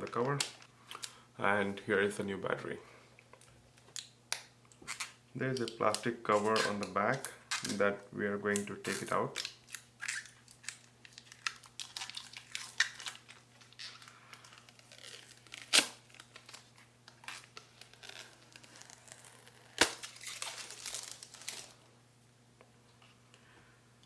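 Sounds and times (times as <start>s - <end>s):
plastic cover crinkling and tearing: 4.8s - 7.8s, 8.8s - 21.9s.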